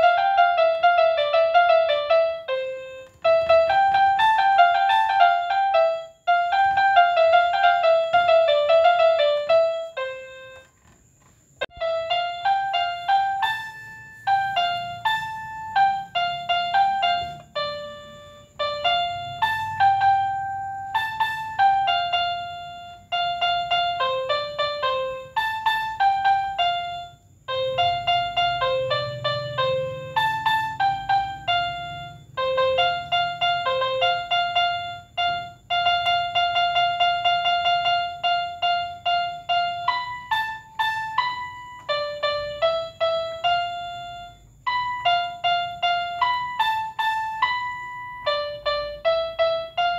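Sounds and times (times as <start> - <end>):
electronic keyboard playing tunes: 0.0 - 49.9.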